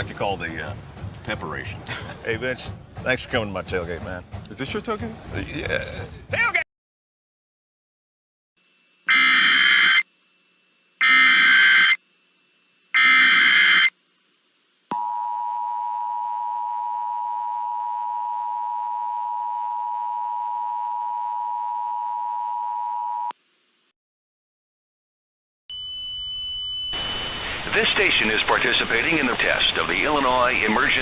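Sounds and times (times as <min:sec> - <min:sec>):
data tone bursts: 0:09.1 - 0:10.1, 0:11.0 - 0:12.0, 0:13.0 - 0:14.0
steady two-tone attention signal: 0:09.1 - 0:10.1, 0:11.0 - 0:12.0, 0:13.0 - 0:13.9.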